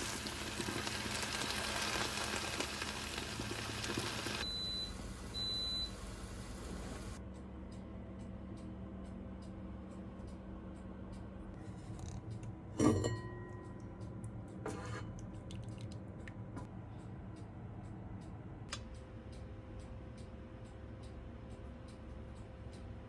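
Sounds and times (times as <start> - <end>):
steady low hum: 0.0 - 23.0
kitchenware ringing clink: 12.8 - 13.8.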